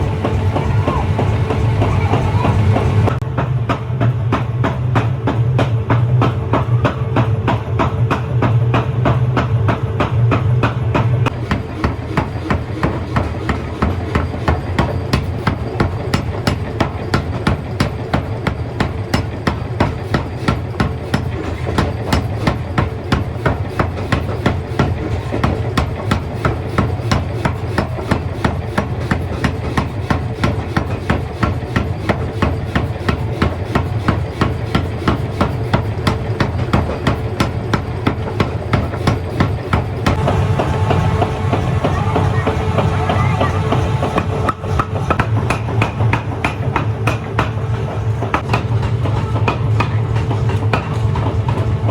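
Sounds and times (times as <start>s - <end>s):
machine hum: 0.0s - 3.2s, 40.0s - 45.8s.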